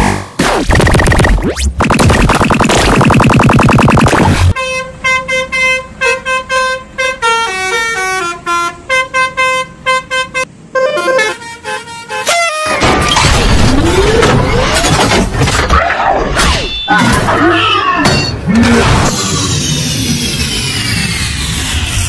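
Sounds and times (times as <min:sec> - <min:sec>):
loud noisy clatter: 0:00.6 - 0:04.6
musical bus horn tune: 0:04.6 - 0:13.0
sliding whines: 0:19.1 - 0:22.0.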